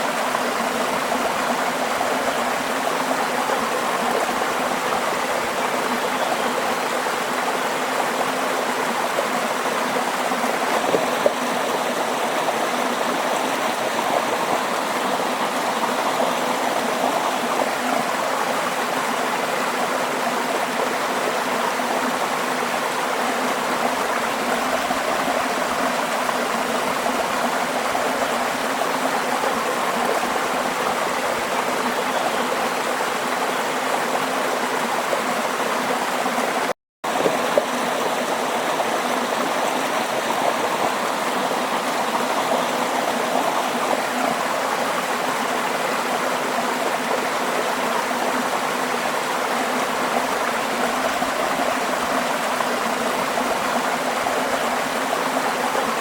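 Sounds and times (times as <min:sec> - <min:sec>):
running water flowing: 0:00.0 - 0:56.0.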